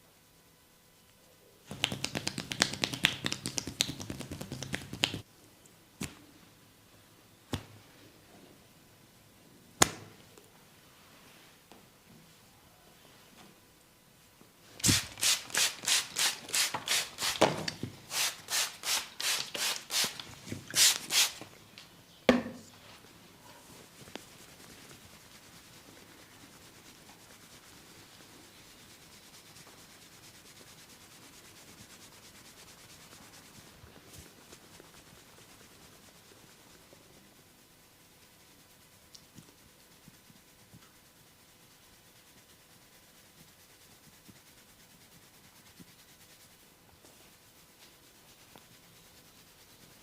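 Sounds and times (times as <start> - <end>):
hands rubbing oiled skin: 1.7 - 5.3, 14.8 - 21.9, 22.7 - 50.0.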